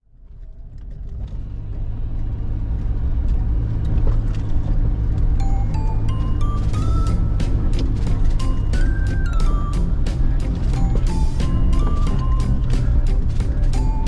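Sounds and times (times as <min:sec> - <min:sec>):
car engine and road rumble: 0:00.0 - 0:14.0
music with rising notes: 0:05.2 - 0:14.0.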